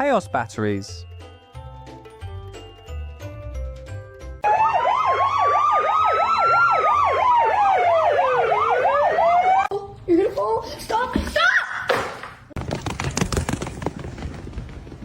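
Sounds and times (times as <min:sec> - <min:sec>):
electronic siren warbling: 0:04.4 - 0:09.7.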